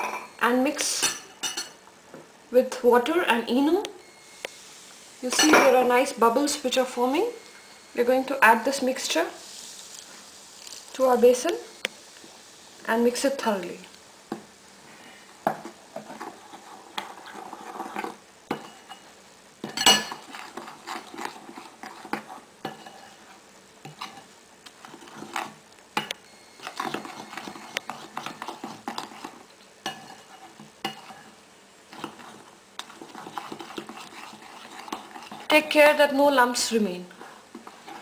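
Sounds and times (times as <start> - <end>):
utensil scraping a bowl: 16.0 - 19.0, 19.7 - 25.6, 26.5 - 35.8, 37.1 - 38.0.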